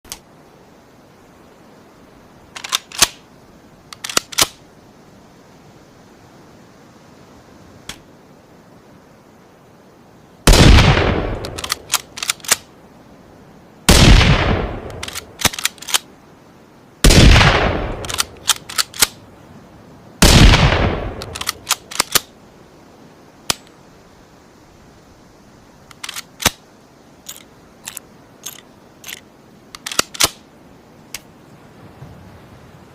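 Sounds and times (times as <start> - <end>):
sharp clicks: 3.9 - 4.6, 11.3 - 12.7, 14.8 - 16.1, 17.9 - 19.2, 21.1 - 22.3, 25.9 - 26.6, 27.2 - 30.4
rifle shots: 10.5 - 12.6, 13.9 - 16.0, 17.0 - 19.2, 20.2 - 22.3.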